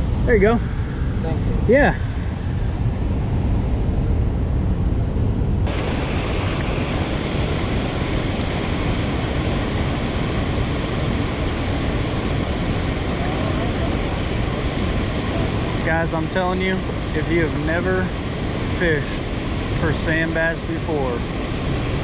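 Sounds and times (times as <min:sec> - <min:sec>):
water roaring through dam release: 0:05.7 - 0:22.0.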